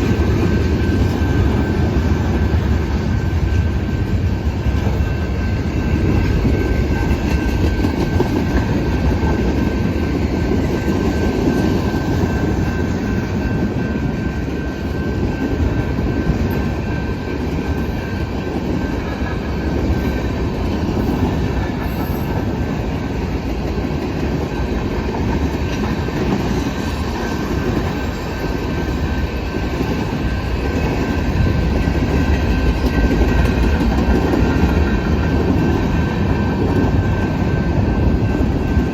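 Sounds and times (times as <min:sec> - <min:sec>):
train wheels rumbling on rail: 0:00.0 - 0:38.9.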